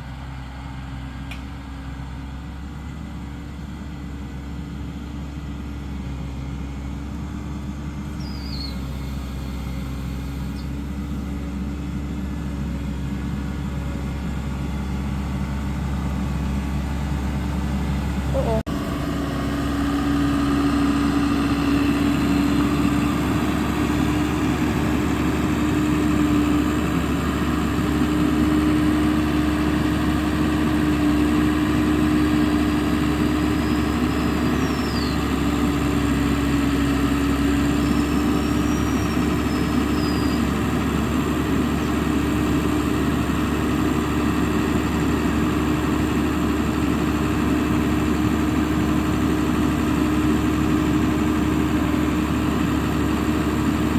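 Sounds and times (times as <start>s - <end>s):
vehicle engine droning: 0.0s - 53.9s
faint high whistles: 8.2s - 8.9s, 34.6s - 35.2s, 37.8s - 40.4s.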